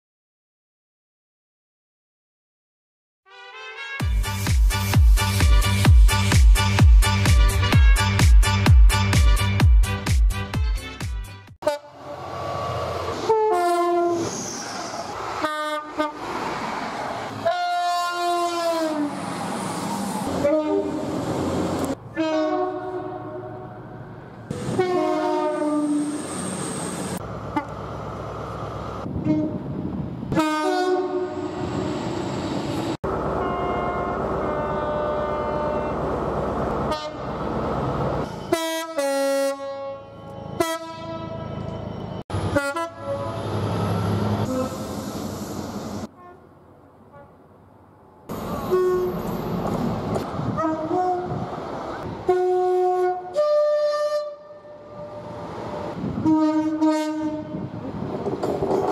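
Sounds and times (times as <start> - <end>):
train horn blasts: 3.3 - 4.4, 11.6 - 12.2, 13.2 - 14.2, 15.4 - 16.2, 17.4 - 19.1, 20.4 - 21.0, 22.1 - 23.8, 24.5 - 26.2, 29.1 - 29.7, 30.3 - 31.6, 33.4 - 36.0, 36.9 - 37.3, 38.3 - 41.5, 42.3 - 43.6, 46.1 - 46.5, 47.1 - 47.4, 48.5 - 49.5, 50.5 - 51.4, 52.2 - 55.4, 56.0 - 57.7
train running noise: 48.3 - 53.4, 54.3 - 58.9.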